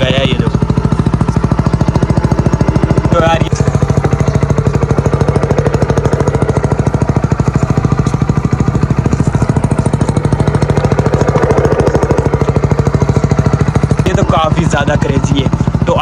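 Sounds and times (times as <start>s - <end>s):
motorcycle engine running: 0.0s - 16.0s.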